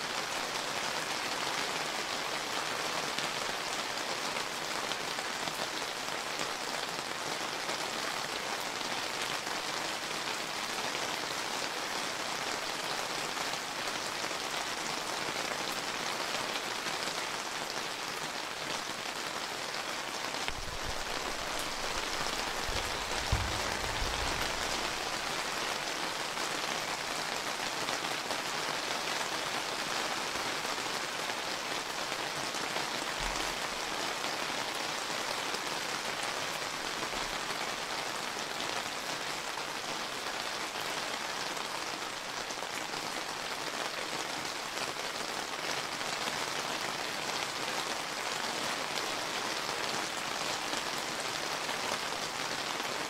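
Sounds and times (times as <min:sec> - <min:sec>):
steady rain falling: 0:00.0 - 0:53.0
brief low thump: 0:22.8 - 0:24.5.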